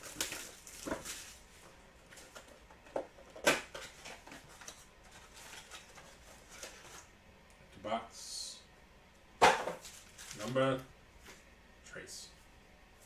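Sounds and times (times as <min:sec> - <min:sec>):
card packs rustling: 0:00.0 - 0:07.1, 0:09.4 - 0:10.8.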